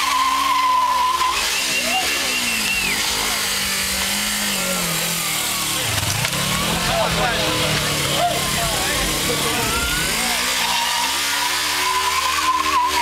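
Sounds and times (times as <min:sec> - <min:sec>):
tyre squealing: 0:00.0 - 0:03.4, 0:05.9 - 0:13.0
motorcycle engine revving: 0:00.0 - 0:13.0.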